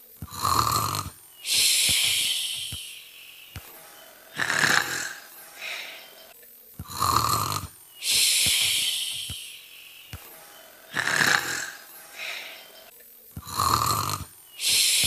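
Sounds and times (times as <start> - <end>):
person imitating snoring: 0.2 - 3.2, 4.3 - 6.2, 6.8 - 9.7, 10.9 - 12.8, 13.4 - 15.0
faint clicks: 1.0 - 3.8, 8.0 - 10.3.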